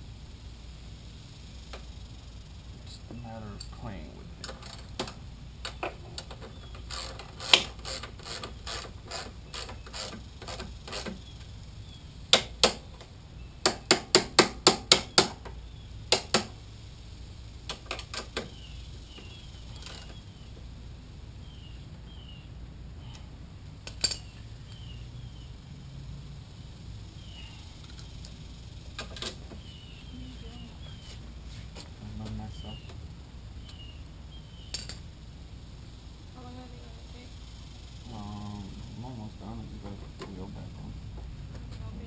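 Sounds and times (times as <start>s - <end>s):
ratchet wrench clicking: 5.6s - 11.4s, 23.8s - 24.9s.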